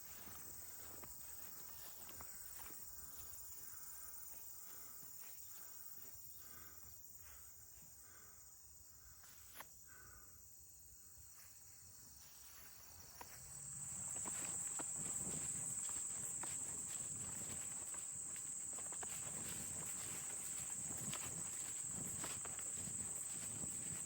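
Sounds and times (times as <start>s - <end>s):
footsteps swishing through grass: 0.0s - 3.3s, 12.5s - 24.0s
crickets chirping: 0.0s - 24.0s.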